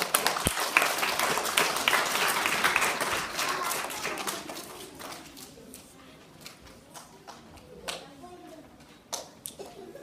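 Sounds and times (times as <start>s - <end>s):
group applauding: 0.0s - 5.5s.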